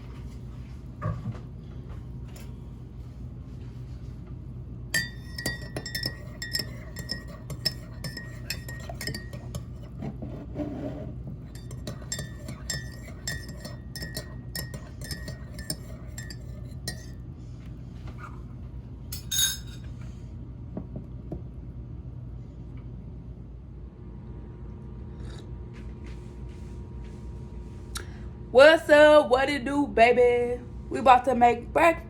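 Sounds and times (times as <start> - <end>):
steady low hum: 0.0 - 32.0
glassware and dishes clinking: 5.0 - 10.0, 11.5 - 17.2, 19.1 - 19.9.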